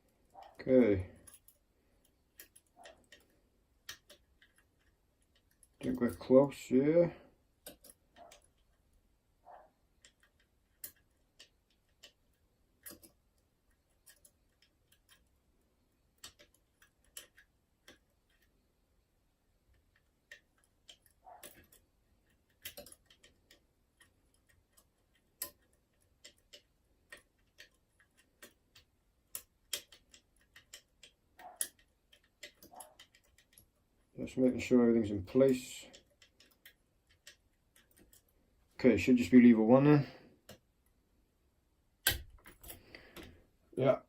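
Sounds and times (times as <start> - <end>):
lock pick clicking in lock: 1.2 - 6.2, 7.6 - 8.8, 10.0 - 15.3, 16.2 - 18.5, 19.9 - 33.8, 42.0 - 43.3.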